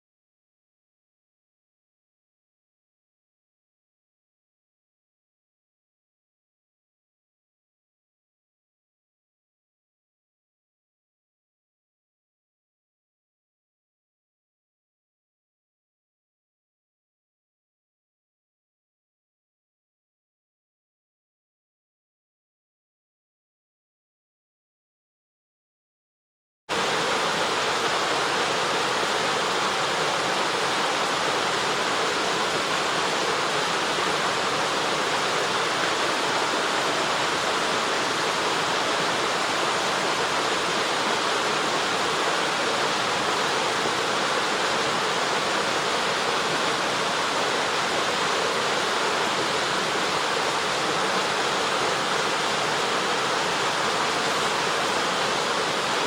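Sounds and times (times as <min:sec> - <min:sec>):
waterfall rushing: 0:26.7 - 0:56.0.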